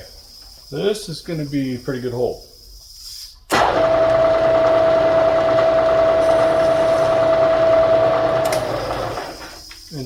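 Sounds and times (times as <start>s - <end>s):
milling machine spindle whine: 3.5s - 9.7s.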